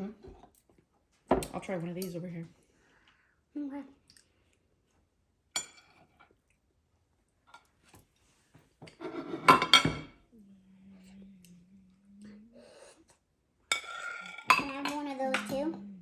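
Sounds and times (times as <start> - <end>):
dishes and cutlery clinking: 5.6 - 6.4, 8.8 - 10.2, 13.7 - 15.9
low steady hum: 9.7 - 16.0.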